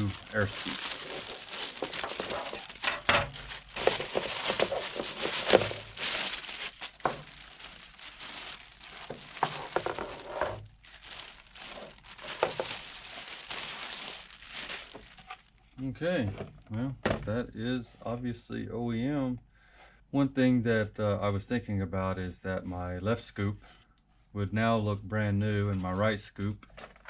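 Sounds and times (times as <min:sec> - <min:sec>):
packaging crinkling and rustling: 0:00.0 - 0:15.6, 0:26.6 - 0:27.0.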